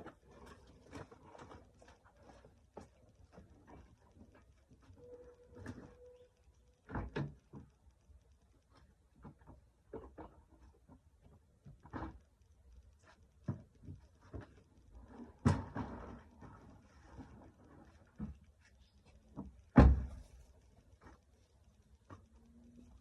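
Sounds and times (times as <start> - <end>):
objects being handled and packed: 0.0 - 7.8.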